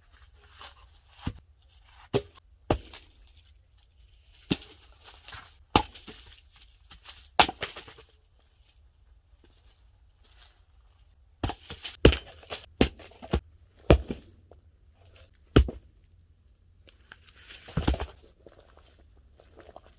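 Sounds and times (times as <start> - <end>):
axe splitting firewood: 2.0 - 3.1, 4.5 - 8.2, 11.4 - 15.9, 17.6 - 18.6.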